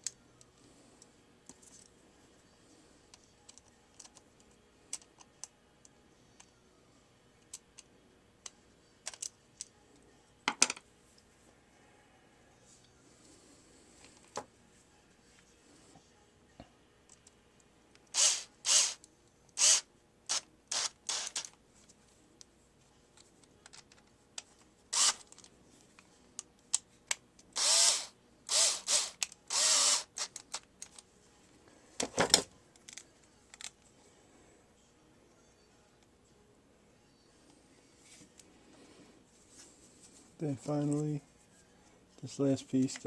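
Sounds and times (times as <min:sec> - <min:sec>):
power screwdriver driving screws: 0:18.1 - 0:19.0, 0:19.6 - 0:21.5, 0:25.0 - 0:25.2, 0:27.6 - 0:30.4.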